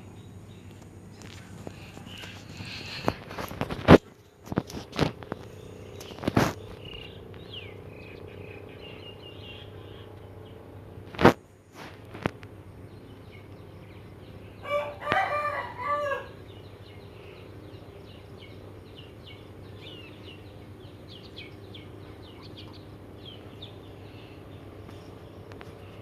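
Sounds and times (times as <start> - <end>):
small birds chirping: 0.0 - 26.0
rooster crowing: 14.6 - 16.4.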